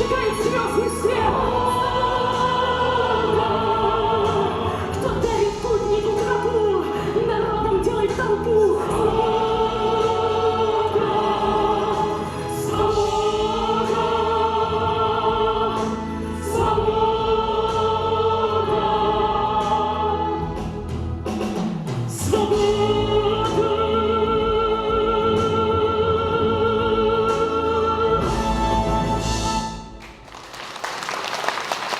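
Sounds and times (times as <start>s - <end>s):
voices singing long notes: 0.0s - 20.8s.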